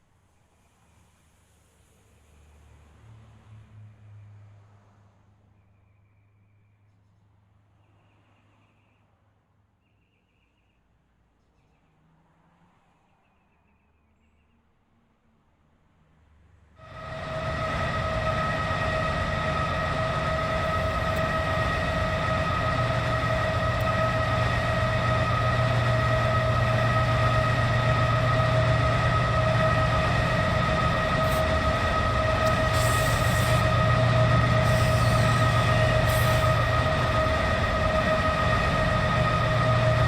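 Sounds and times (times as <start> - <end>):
high whining tone: 16.8 - 40.0
train rumbling past: 16.8 - 40.0
short hissing: 31.0 - 37.3.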